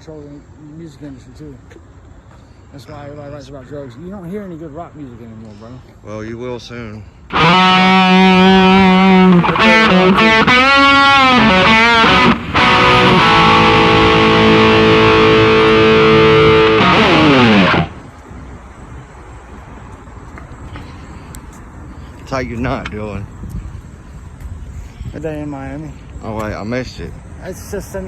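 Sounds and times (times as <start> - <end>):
distorted electric guitar: 7.3 - 18.0.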